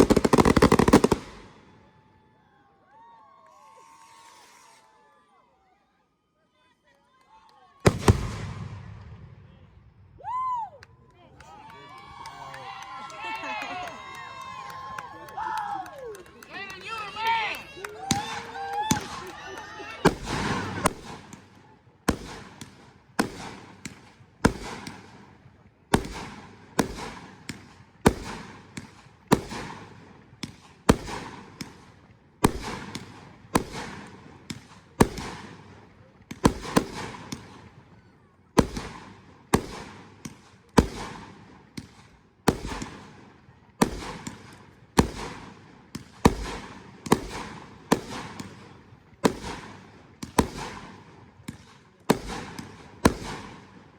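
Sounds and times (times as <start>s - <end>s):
fireworks bangs: 0.0s - 2.0s, 7.8s - 10.6s, 16.2s - 37.9s, 38.6s - 53.9s.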